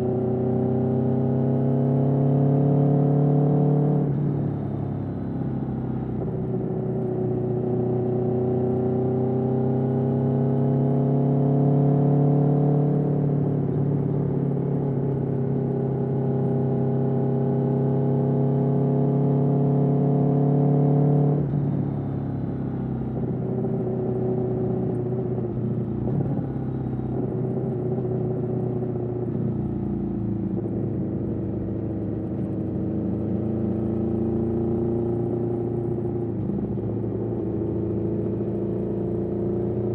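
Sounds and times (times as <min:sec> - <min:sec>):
motorcycle engine running: 0:21.6 - 0:39.9.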